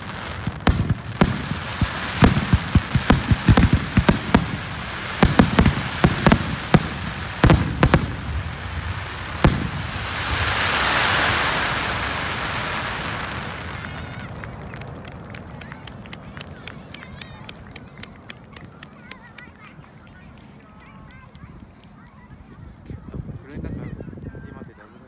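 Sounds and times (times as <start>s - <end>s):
broad rushing hiss: 0.0s - 12.6s
fireworks bangs: 0.0s - 14.7s.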